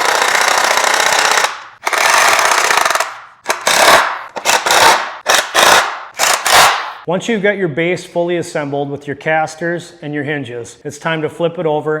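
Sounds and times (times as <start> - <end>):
power drill driving screws: 0.0 - 6.8.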